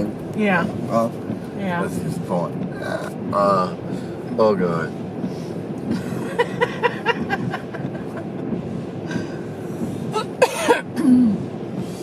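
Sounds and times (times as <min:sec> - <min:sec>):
steady background noise: 0:00.0 - 0:12.0
person laughing: 0:06.0 - 0:08.4
cough-like burst: 0:10.2 - 0:11.4.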